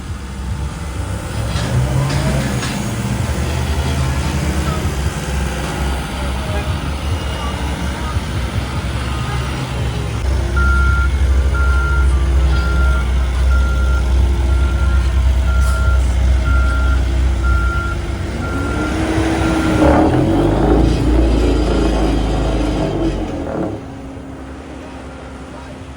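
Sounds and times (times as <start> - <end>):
heavy engine rumbling: 0.0 - 25.9
backup alarm beeping: 7.1 - 20.4.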